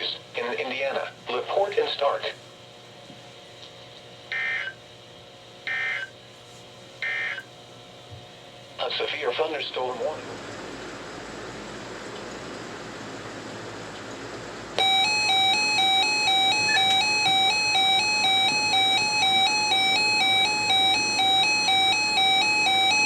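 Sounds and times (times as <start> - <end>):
faint radio hiss: 0.0 - 4.8, 8.7 - 10.8
electronic emergency alert tone: 4.3 - 4.8, 5.7 - 6.1, 7.0 - 7.4, 14.8 - 23.0.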